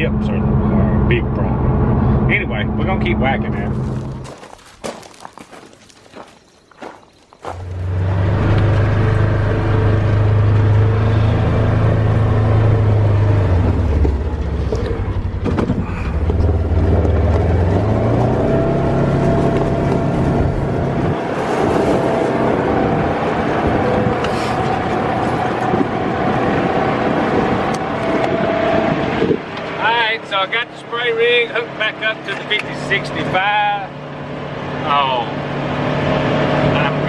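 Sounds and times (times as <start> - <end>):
vehicle engine revving: 0.0 - 4.3, 7.5 - 37.0.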